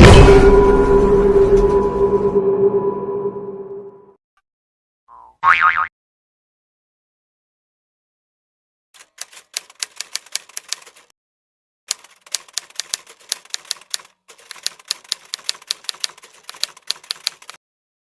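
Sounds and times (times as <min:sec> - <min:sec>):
rapid keyboard key clicks: 0:09.0 - 0:11.1, 0:11.9 - 0:17.6.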